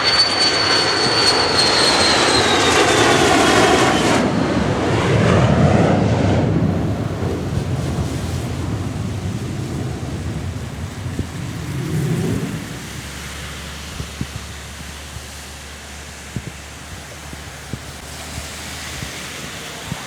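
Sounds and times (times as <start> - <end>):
jet engine rumble: 0.0 - 20.0
steady wind noise: 0.0 - 20.0.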